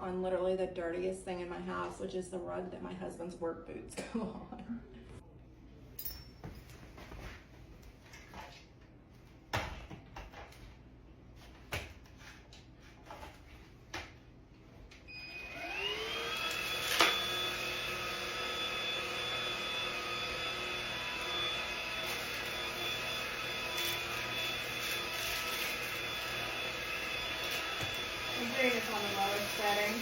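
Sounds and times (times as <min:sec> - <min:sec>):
stick vacuum motor whine: 0:15.1 - 0:30.0.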